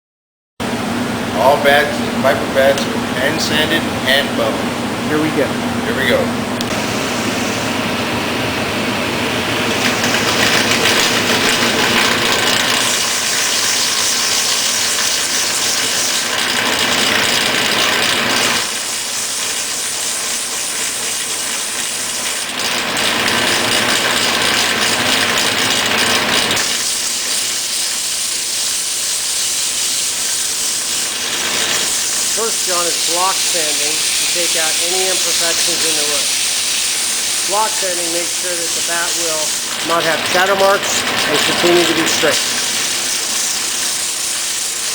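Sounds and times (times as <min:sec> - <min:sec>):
sandpaper rubbing on wooden bat: 0:26.6 - 0:44.9.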